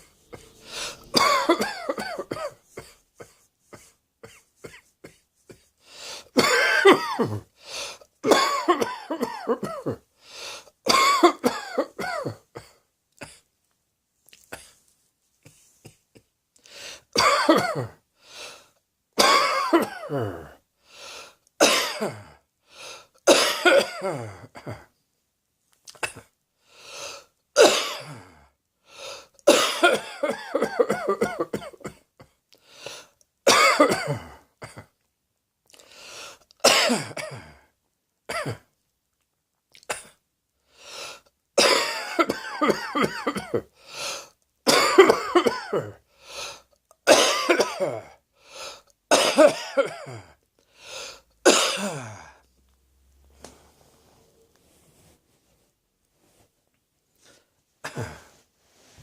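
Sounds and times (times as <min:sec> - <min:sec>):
person coughing: 0:00.0 - 0:05.7, 0:06.3 - 0:07.5, 0:08.2 - 0:10.1, 0:10.9 - 0:13.5, 0:17.2 - 0:18.0, 0:19.2 - 0:20.6, 0:21.6 - 0:22.4, 0:23.3 - 0:24.9, 0:27.6 - 0:28.4, 0:29.5 - 0:32.4, 0:33.5 - 0:35.0, 0:36.6 - 0:37.7, 0:38.3 - 0:38.7, 0:41.6 - 0:43.7, 0:44.7 - 0:46.0, 0:47.1 - 0:48.2, 0:49.1 - 0:50.4, 0:51.4 - 0:52.4, 0:57.8 - 0:58.4.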